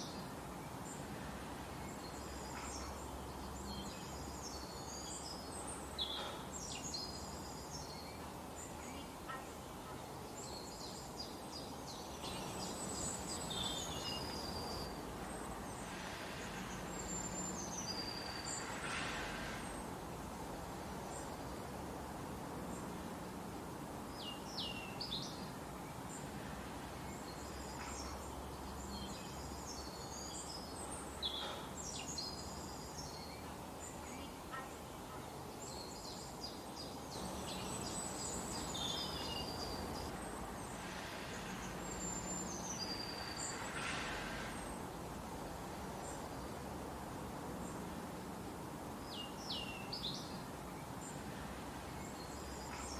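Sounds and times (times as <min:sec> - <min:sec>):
steady background hiss: 0:00.0 - 0:52.9
birds chirping and trilling: 0:01.8 - 0:19.8, 0:27.0 - 0:44.8.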